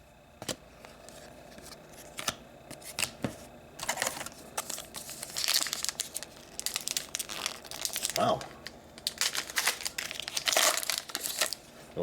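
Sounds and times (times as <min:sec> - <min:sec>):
foil wrapper crinkling and tearing: 0:03.8 - 0:11.7.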